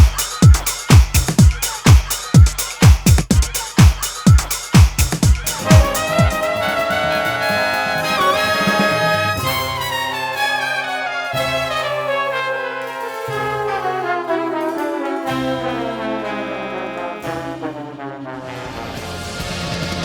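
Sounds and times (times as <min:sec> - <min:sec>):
bass line: 0:04.3 - 0:09.6
brass music: 0:05.2 - 0:20.0.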